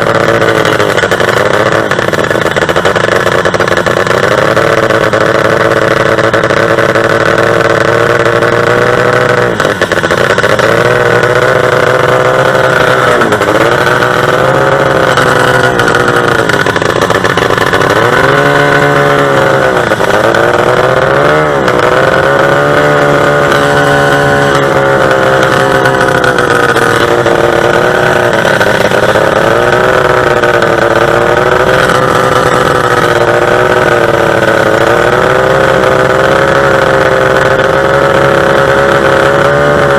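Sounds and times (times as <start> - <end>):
boat engine revving hard: 0.0 - 39.9.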